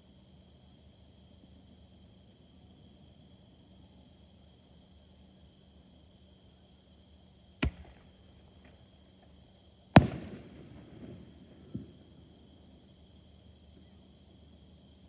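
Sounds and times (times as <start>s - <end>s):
firework shells bursting: 7.6s - 8.8s, 10.0s - 12.5s.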